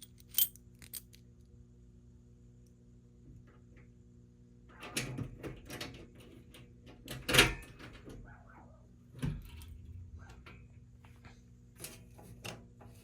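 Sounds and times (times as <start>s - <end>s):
keys rattling and clicking: 0.0s - 1.2s
faint steady hum: 0.0s - 13.0s.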